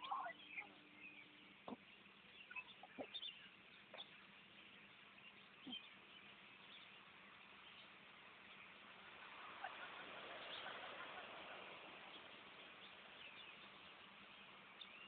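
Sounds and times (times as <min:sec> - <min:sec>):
faint chirps or clicks: 0:00.0 - 0:04.2
faint steady hiss: 0:00.0 - 0:15.0.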